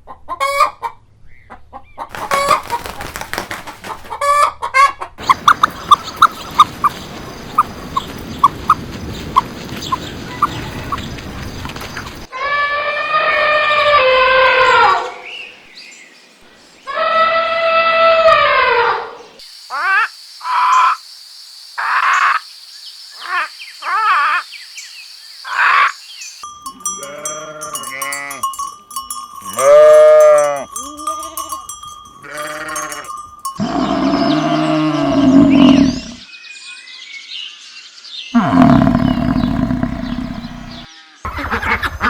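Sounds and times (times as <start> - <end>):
animals bleating: 32.2 - 36.2, 38.4 - 40.9.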